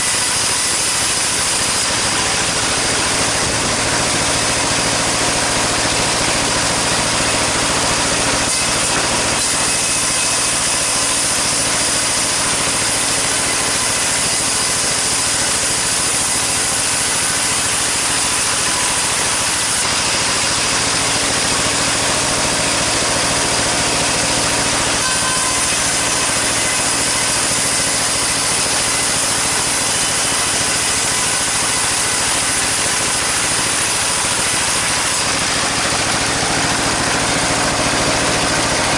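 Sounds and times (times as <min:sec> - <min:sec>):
saw cutting timber: 0:00.0 - 0:38.9
engine hum: 0:35.2 - 0:38.9.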